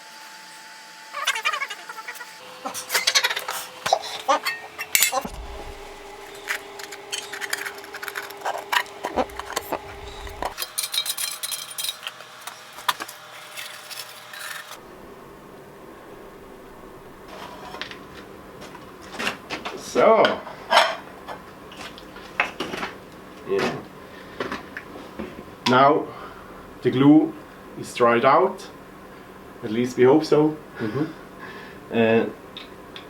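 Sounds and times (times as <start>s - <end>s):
metal tools clinking: 4.4s - 5.4s, 9.3s - 12.1s
steady low hum: 5.2s - 10.6s, 14.8s - 18.6s.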